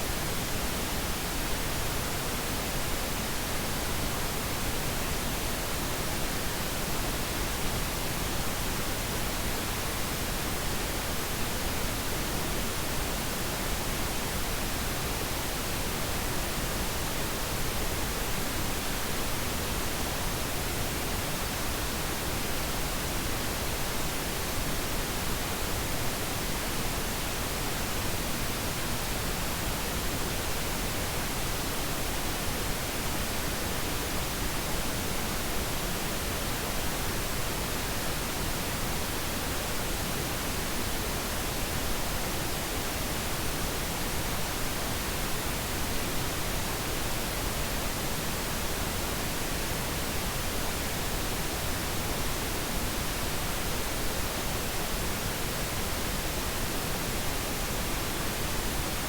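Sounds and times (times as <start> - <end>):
pink noise hiss: 0.0 - 59.0.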